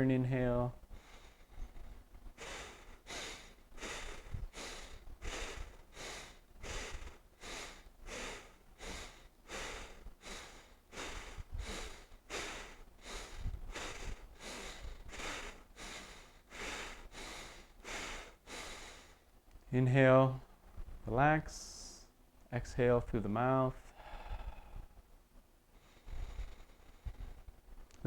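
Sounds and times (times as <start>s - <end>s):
forceful breathing through nose: 0.9s - 19.3s, 23.9s - 25.0s, 25.8s - 27.6s.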